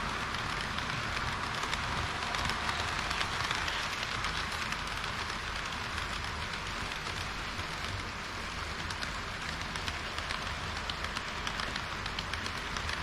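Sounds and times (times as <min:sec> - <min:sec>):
model train wheels on rails: 0:00.0 - 0:13.0
faint clicks: 0:08.7 - 0:13.0.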